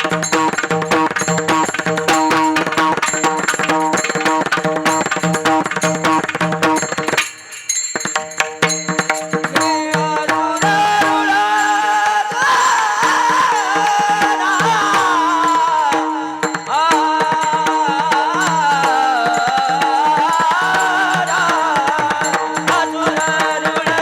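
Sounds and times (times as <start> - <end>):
person singing melodic line: 9.9 - 23.5.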